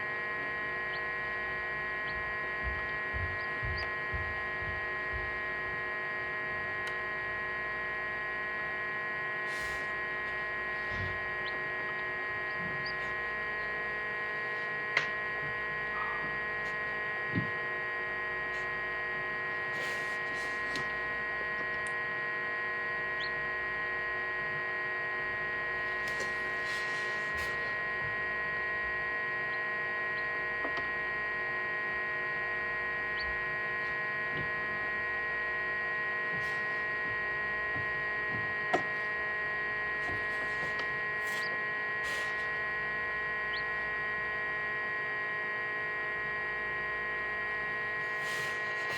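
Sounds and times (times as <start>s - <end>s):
incubator electrical hum: 0.0s - 48.9s.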